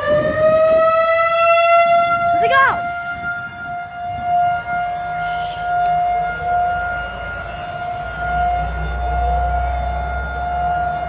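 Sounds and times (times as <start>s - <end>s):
warning siren steady tone: 0.0s - 11.0s.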